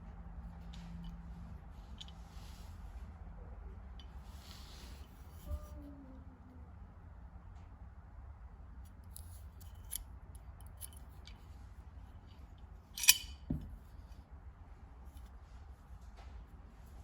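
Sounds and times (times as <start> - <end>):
metal tool clicks and snips: 13.0 - 13.5.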